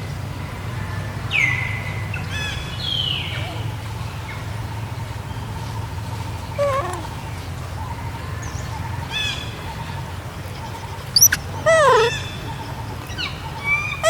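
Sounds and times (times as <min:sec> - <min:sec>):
low steady hum: 0:00.0 - 0:14.0
young macaque calling: 0:06.5 - 0:07.2, 0:10.6 - 0:14.0.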